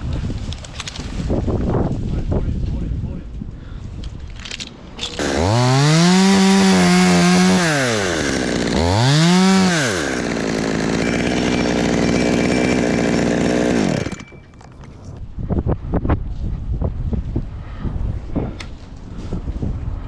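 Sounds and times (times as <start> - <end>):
chainsaw revving: 5.1 - 14.2.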